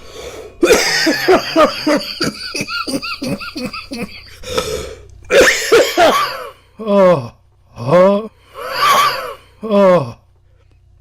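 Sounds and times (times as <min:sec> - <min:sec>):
man coughing: 0:00.6 - 0:04.4, 0:05.3 - 0:10.2.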